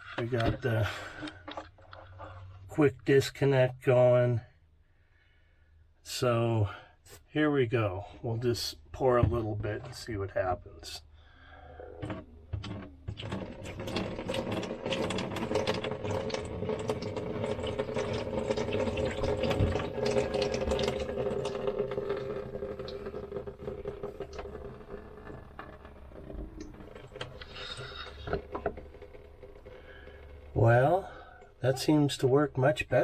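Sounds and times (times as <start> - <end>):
water running down drain: 11.3 - 32.2
water pouring into sink: 11.9 - 31.9.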